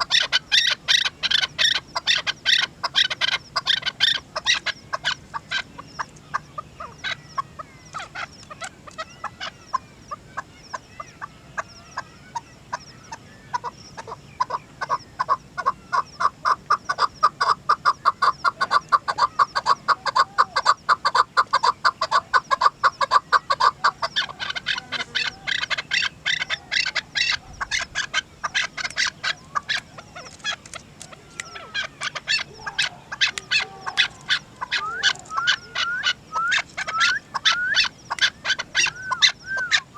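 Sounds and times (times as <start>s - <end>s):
partridge clucking calls: 0.0s - 39.9s.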